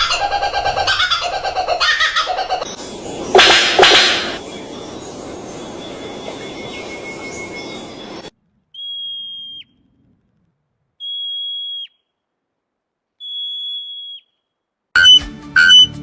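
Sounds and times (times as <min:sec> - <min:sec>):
hissy noise: 0:02.6 - 0:08.3
animal whistled call: 0:02.6 - 0:09.8, 0:11.0 - 0:12.1, 0:13.2 - 0:14.4, 0:15.0 - 0:16.0.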